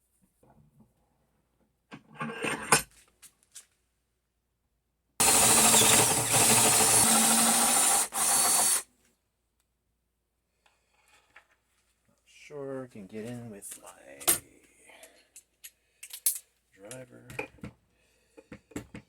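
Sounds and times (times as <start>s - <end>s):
cordless power driver running: 5.2s - 8.8s
light clicks of parts handled: 15.0s - 17.2s.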